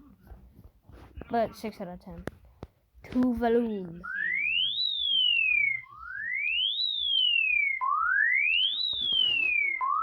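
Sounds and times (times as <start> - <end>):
electronic siren tone sweeping: 4.0 - 10.0.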